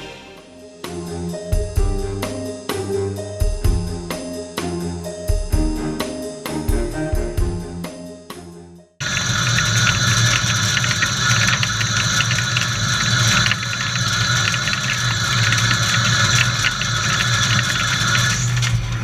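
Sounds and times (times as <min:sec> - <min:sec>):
background music: 0:00.0 - 0:09.0
lathe running: 0:09.0 - 0:19.0.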